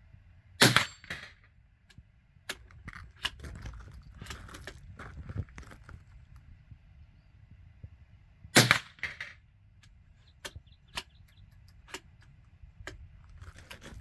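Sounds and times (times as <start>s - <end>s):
rifle shot: 0.6s - 1.4s, 8.5s - 9.4s.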